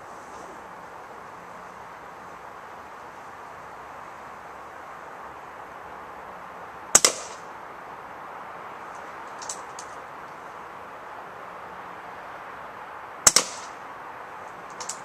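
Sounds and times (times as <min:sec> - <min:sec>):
air rifle shot: 0:07.0 - 0:07.4, 0:13.3 - 0:13.8
pellet impact smack: 0:07.0 - 0:07.4, 0:13.3 - 0:13.7
faint clicks: 0:14.7 - 0:15.0.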